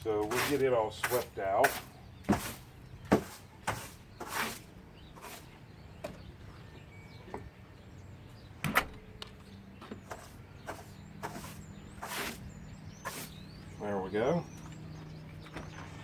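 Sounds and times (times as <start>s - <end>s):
broom sweeping: 0.2s - 5.5s, 10.1s - 12.4s, 13.0s - 13.4s.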